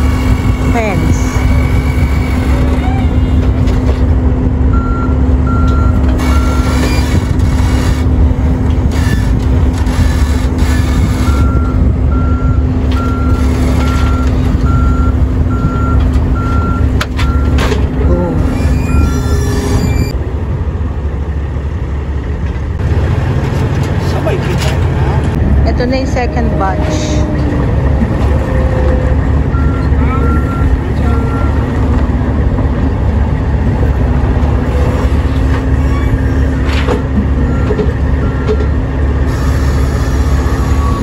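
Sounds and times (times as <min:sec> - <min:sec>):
low engine rumble: 0:00.0 - 0:41.0
reversing alarm beeping: 0:04.7 - 0:07.2, 0:10.8 - 0:20.2, 0:28.6 - 0:31.8, 0:37.4 - 0:41.0.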